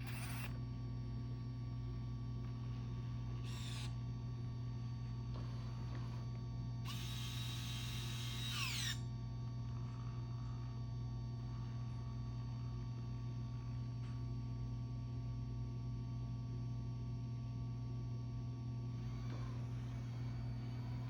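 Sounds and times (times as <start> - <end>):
higher motor whir: 19.0 - 21.0
robot vacuum humming: 19.0 - 21.0.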